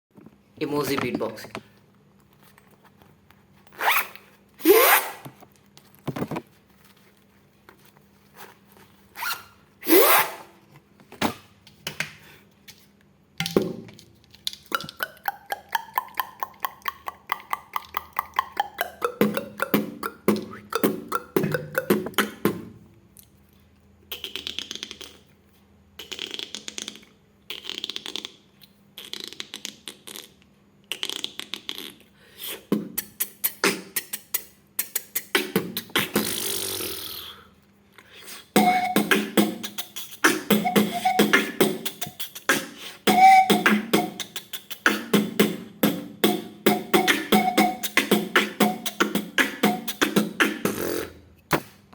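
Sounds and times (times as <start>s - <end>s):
beatboxing: 14.5s - 22.8s, 24.0s - 37.5s, 38.1s - 51.8s.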